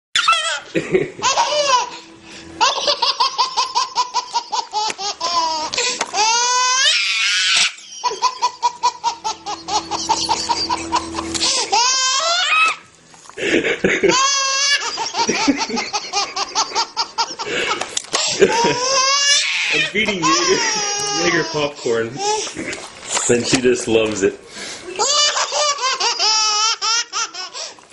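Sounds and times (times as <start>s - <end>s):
baby laughing: 0.2s - 22.8s, 24.9s - 27.8s.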